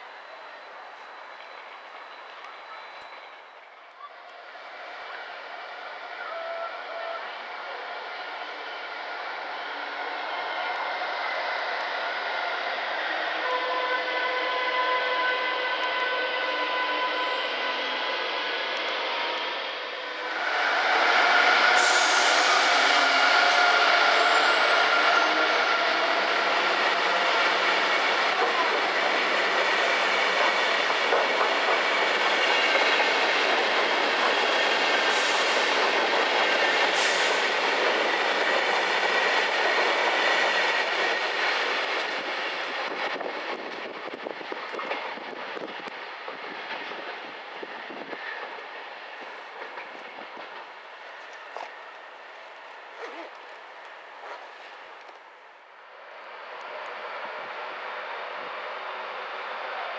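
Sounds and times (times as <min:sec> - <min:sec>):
passenger train running: 0:00.0 - 0:59.9.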